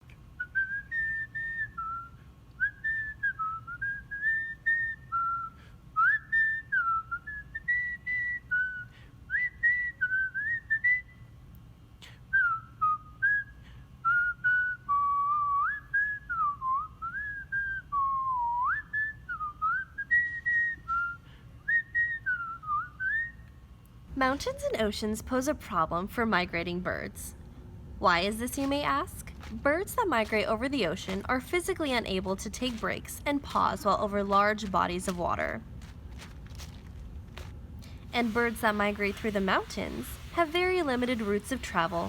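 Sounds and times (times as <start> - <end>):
person whistling a tune: 0.4 - 11.2, 12.0 - 23.5.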